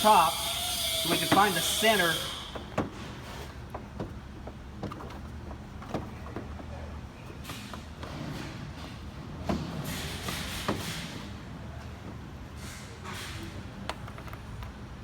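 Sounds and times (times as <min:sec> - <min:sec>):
scraping rustles: 0:01.0 - 0:11.4.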